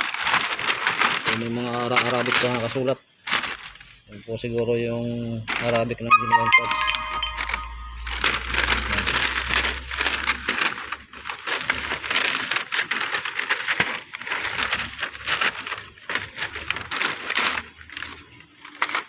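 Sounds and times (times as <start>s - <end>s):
plastic wrapping crinkling: 0.0s - 4.1s, 8.1s - 19.0s.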